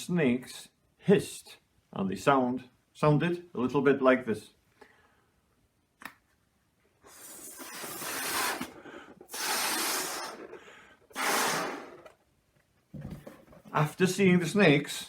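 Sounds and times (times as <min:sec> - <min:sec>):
air hissing from balloon: 0:07.0 - 0:12.1.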